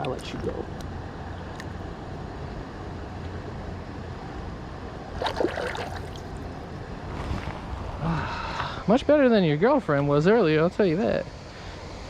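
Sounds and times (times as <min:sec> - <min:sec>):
splash: 0:05.2 - 0:06.7
river water rushing: 0:05.2 - 0:06.8.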